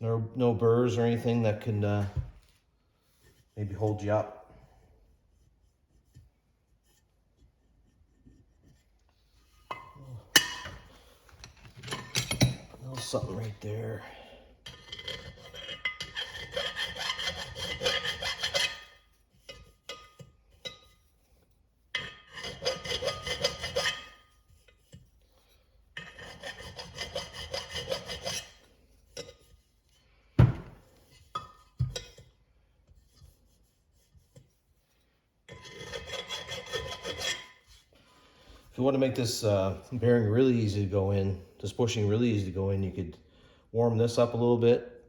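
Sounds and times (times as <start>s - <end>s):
metal rasping on metal: 3.0s - 30.2s, 30.8s - 38.2s.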